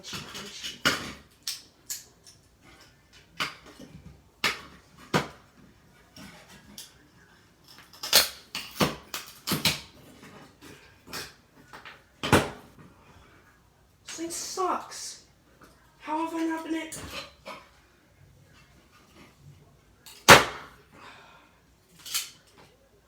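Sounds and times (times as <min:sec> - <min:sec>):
plastic and metal parts cracking apart: 0:00.1 - 0:02.4, 0:07.6 - 0:10.0, 0:21.9 - 0:22.6.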